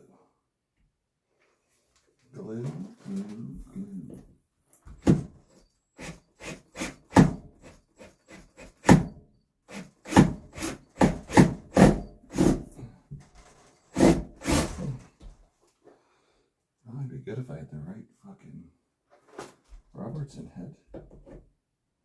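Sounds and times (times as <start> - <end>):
wooden knocks and thuds: 4.9 - 5.4, 20.9 - 21.5.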